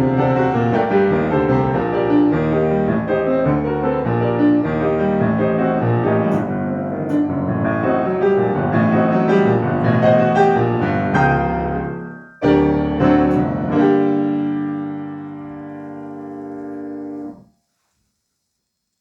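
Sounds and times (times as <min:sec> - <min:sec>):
solo classical piano: 0:00.0 - 0:17.5.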